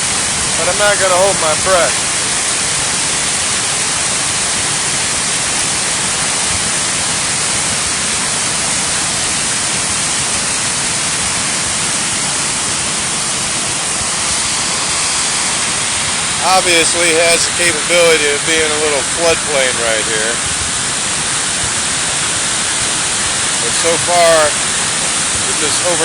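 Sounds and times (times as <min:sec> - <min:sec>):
flooded creek rushing: 0:00.0 - 0:26.0.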